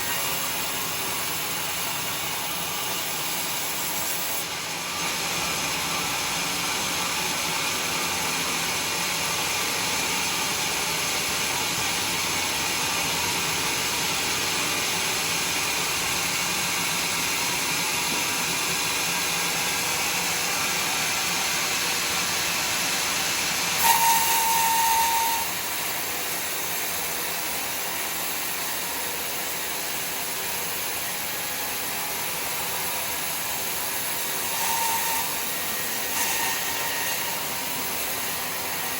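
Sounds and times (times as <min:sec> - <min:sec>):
sawmill saw cutting a log: 0:00.0 - 0:38.9.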